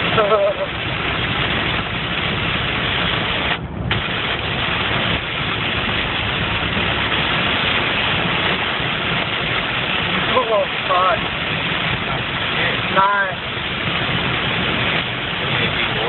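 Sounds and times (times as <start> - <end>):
car engine running: 0.0 - 16.0
water rushing: 0.0 - 16.0.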